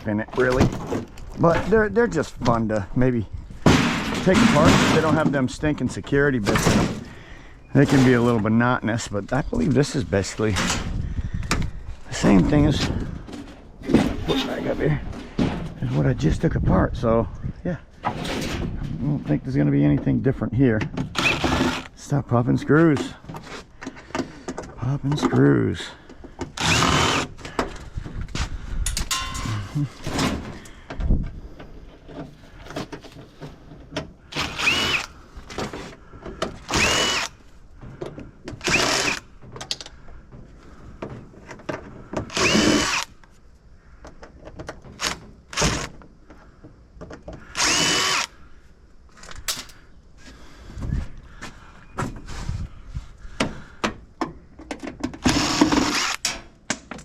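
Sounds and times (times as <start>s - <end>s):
power drill whining: 21.2s - 22.0s, 26.6s - 27.6s, 34.3s - 35.2s, 36.6s - 37.4s, 38.6s - 39.2s, 42.3s - 43.1s, 47.4s - 48.4s, 55.2s - 56.3s
metal casing clattering: 28.9s - 30.7s.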